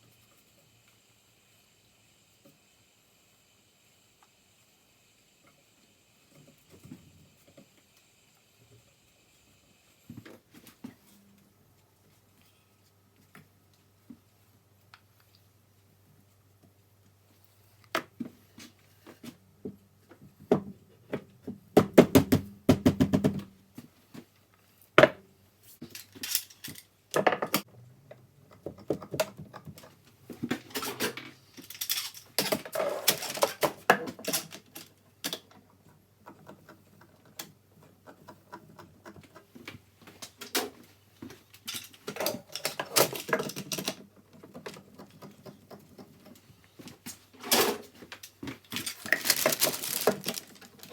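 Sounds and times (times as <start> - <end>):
scraping and rustling: 46.9 - 50.9.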